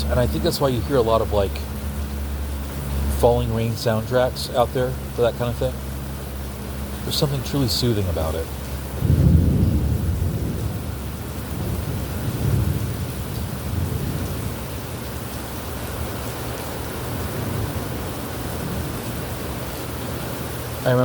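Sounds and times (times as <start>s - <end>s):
steady rainfall: 0.0s - 21.0s
rolling thunder: 8.9s - 14.9s.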